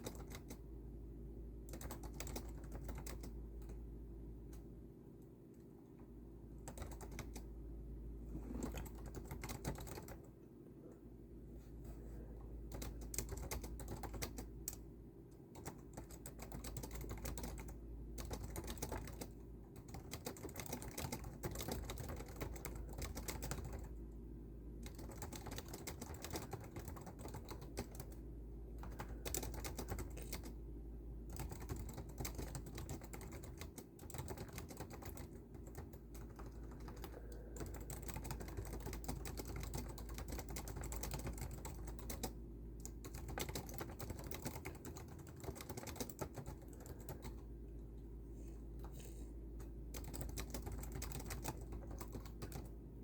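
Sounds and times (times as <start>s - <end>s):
fast typing on a keyboard: 0.0s - 0.6s, 1.6s - 3.8s, 6.6s - 7.5s, 8.3s - 10.3s, 12.7s - 14.8s, 15.5s - 24.0s, 24.8s - 30.6s, 31.2s - 47.5s, 49.9s - 52.8s
steady low hum: 0.0s - 53.0s.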